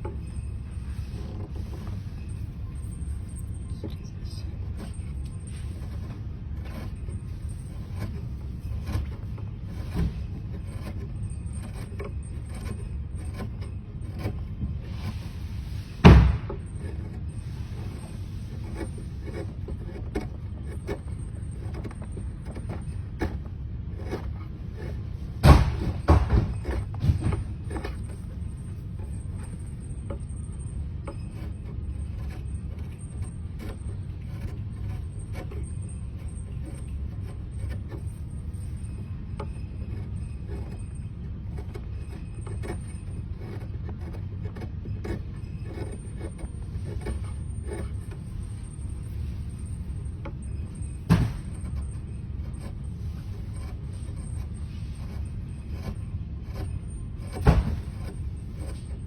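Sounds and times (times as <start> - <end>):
steady low hum: 0.0 - 59.0
sharp knocks: 16.0 - 16.7, 25.4 - 27.8, 51.0 - 51.7, 57.3 - 58.1.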